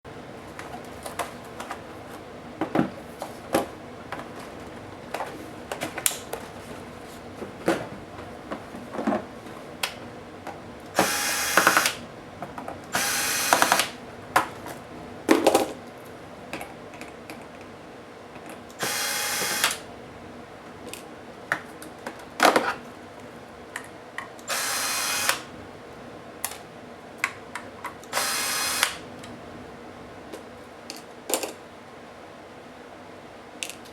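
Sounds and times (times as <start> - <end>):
electric screwdriver running: 11.0 - 12.0, 13.0 - 14.0, 18.8 - 19.8, 24.5 - 25.5, 28.1 - 29.0.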